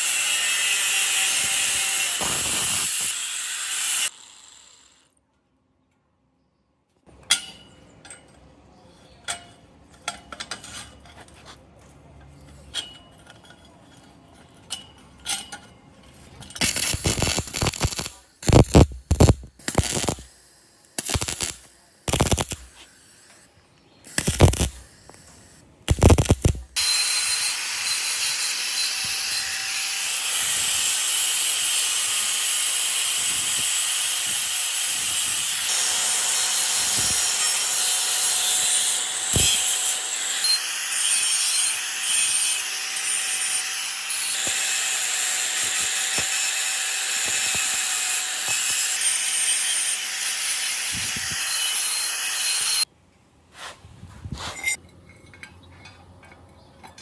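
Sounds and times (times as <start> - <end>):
power tool running: 1.0 - 5.1, 16.6 - 20.3, 21.0 - 22.9, 24.1 - 25.2, 25.9 - 32.6.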